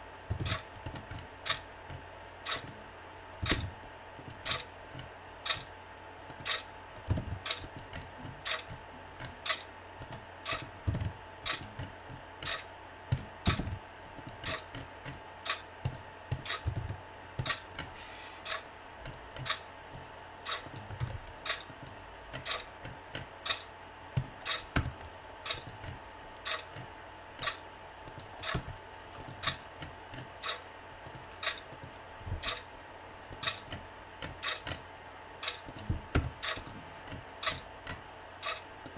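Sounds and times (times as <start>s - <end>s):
computer keyboard typing: 0.3s - 1.6s, 3.4s - 3.9s, 6.4s - 7.8s, 9.5s - 11.8s, 15.5s - 17.9s, 18.5s - 23.6s, 24.2s - 32.6s.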